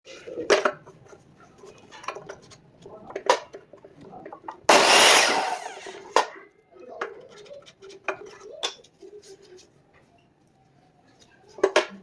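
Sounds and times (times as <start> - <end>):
miter saw cutting: 4.7 - 6.1.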